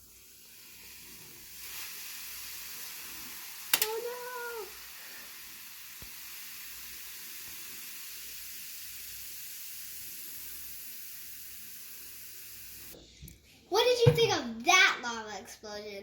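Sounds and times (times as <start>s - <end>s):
fizzing hiss: 0.0s - 13.0s
small click: 3.7s - 3.9s.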